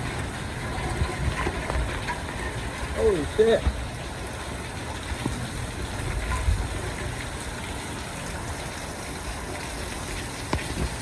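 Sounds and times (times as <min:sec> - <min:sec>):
wind buffets on microphone: 0:00.0 - 0:07.6
storm wind and rain rushing: 0:00.0 - 0:11.0.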